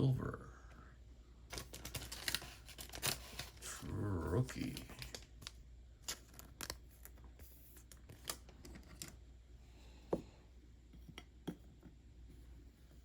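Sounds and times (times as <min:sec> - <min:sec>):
paper cards ticking and sliding: 0:01.5 - 0:03.7, 0:04.5 - 0:09.2.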